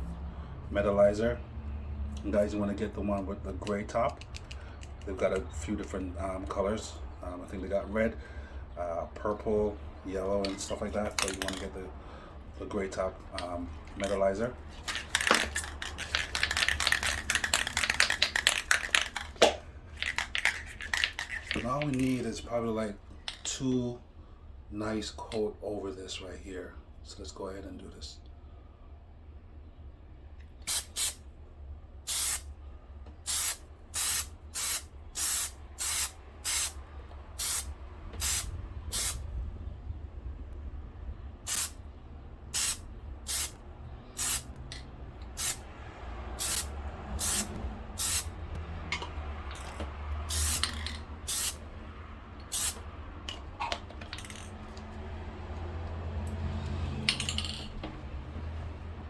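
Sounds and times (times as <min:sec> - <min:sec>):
aerosol can spraying in short bursts: 0:30.7 - 0:31.2, 0:32.1 - 0:32.5, 0:33.3 - 0:36.8, 0:37.4 - 0:39.2, 0:41.5 - 0:41.8, 0:42.6 - 0:43.6, 0:44.2 - 0:44.5, 0:46.4 - 0:48.3, 0:50.3 - 0:51.6, 0:52.5 - 0:52.8.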